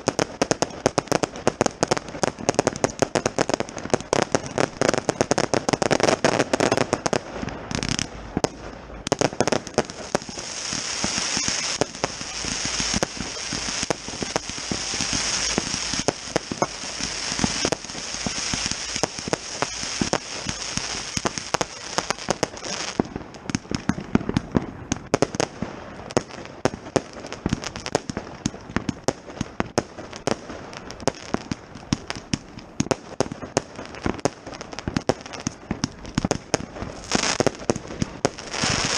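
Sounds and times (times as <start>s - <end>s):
firework hiss: 0.0s - 23.8s, 33.7s - 38.9s
fireworks cracking and banging: 0.0s - 38.9s.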